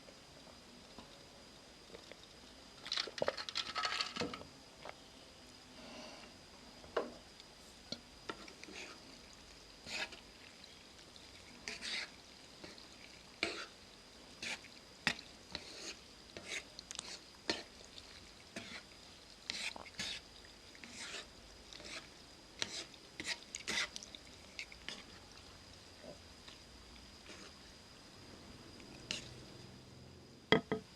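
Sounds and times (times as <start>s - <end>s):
utensils stirring noodle soup: 11.4s - 13.7s, 19.5s - 20.2s, 20.8s - 25.2s, 28.8s - 29.4s.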